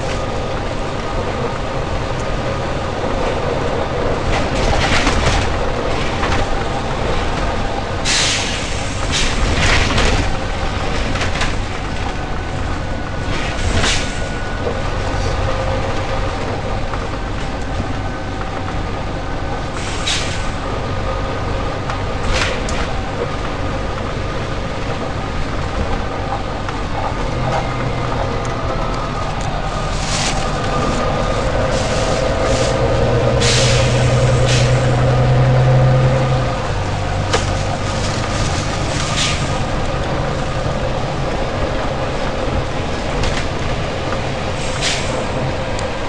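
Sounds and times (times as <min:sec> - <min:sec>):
bus diesel engine rumbling: 0:00.0 - 0:46.0
air brake hisses: 0:08.0 - 0:09.4, 0:19.8 - 0:20.6, 0:31.7 - 0:32.8, 0:33.4 - 0:34.8, 0:44.6 - 0:45.2.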